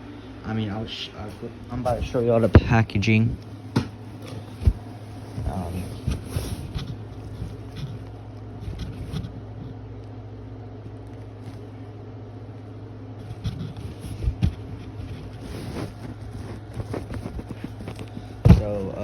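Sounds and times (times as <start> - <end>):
steady low hum: 0.0 - 19.0
handling knocks and rustles: 1.8 - 9.7, 13.2 - 19.0.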